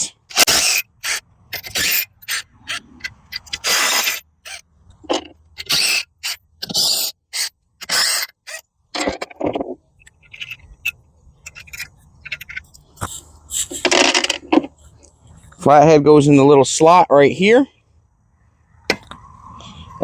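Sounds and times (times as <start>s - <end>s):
tool scraping: 0.0s - 10.7s, 11.4s - 15.7s.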